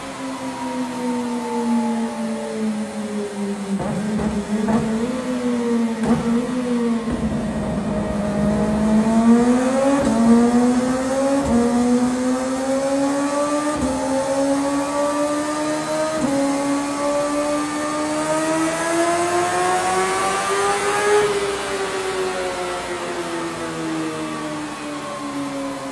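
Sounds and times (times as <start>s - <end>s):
motorcycle engine accelerating: 3.5s - 21.9s.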